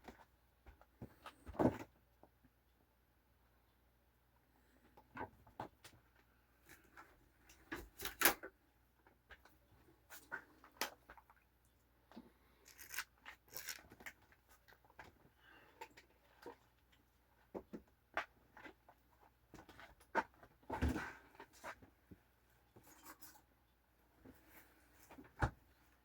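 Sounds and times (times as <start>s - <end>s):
rustling or tearing: 12.6s - 14.2s.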